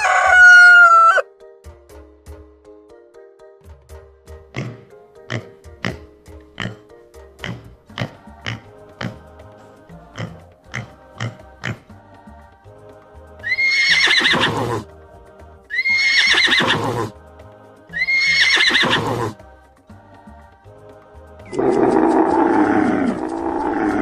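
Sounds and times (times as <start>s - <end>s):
horse whinnying: 0.0s - 1.2s, 13.4s - 14.9s, 15.7s - 17.2s, 17.9s - 19.4s, 21.5s - 24.0s
background music: 0.0s - 24.0s.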